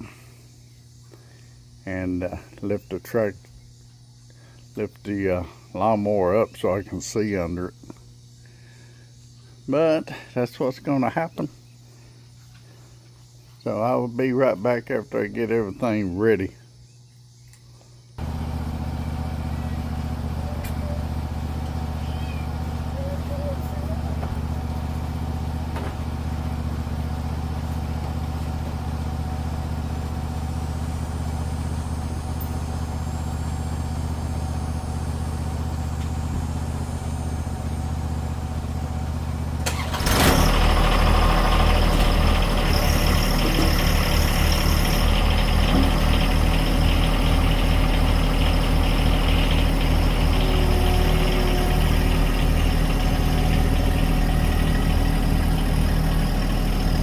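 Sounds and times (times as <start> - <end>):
engine idling: 18.2 - 57.0.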